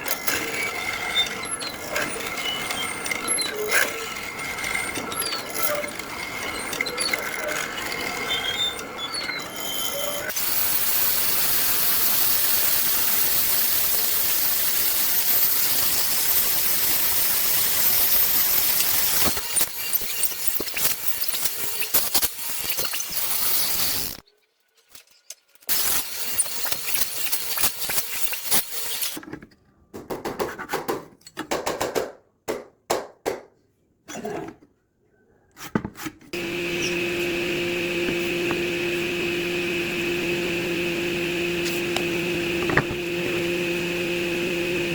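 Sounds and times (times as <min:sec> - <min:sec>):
power tools working wood: 0:00.1 - 0:24.2, 0:25.7 - 0:29.2, 0:36.4 - 0:44.9
motor running at steady pitch: 0:10.3 - 0:19.7, 0:36.4 - 0:44.9.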